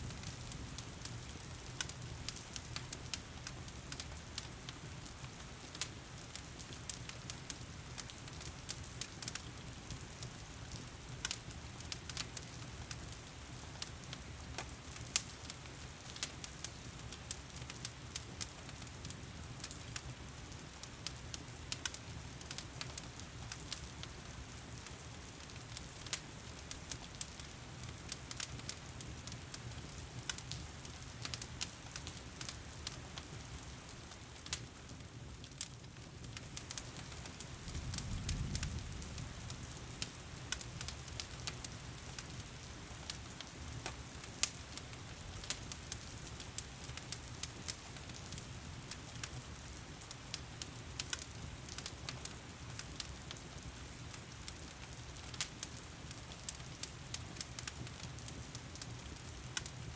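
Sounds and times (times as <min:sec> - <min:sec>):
wood fire crackling and popping: 0:00.0 - 0:59.9.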